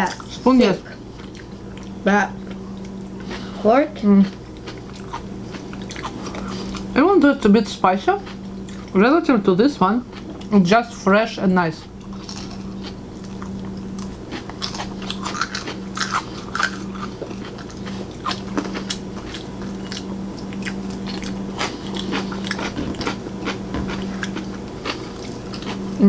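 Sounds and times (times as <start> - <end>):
steady low hum: 0.0 - 26.0
people biting and chewing: 4.2 - 7.0, 12.0 - 26.0.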